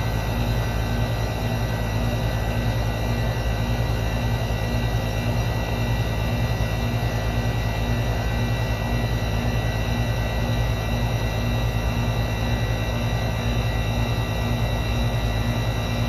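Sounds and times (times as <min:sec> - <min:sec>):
compressor hum: 0:00.0 - 0:16.0
condenser fan rushing: 0:00.0 - 0:16.0.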